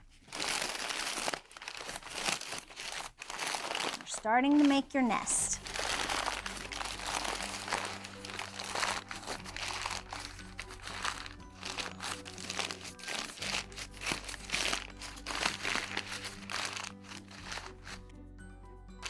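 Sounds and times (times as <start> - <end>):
paper bag crinkling: 0.0 - 18.1
background music: 4.0 - 19.0.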